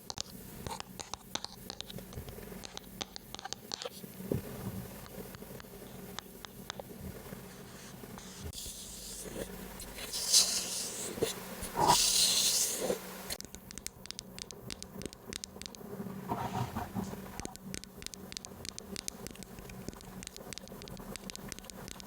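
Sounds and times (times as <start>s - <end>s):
soft hissing rustles: 3.2s - 13.4s
quick light taps: 13.4s - 15.9s.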